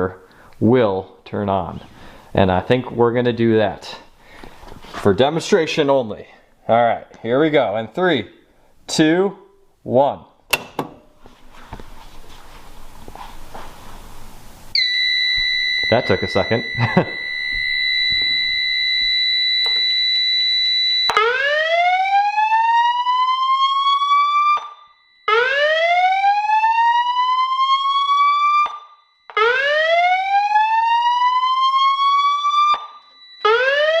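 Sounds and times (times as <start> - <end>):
rising siren wail: 14.8 - 34.0.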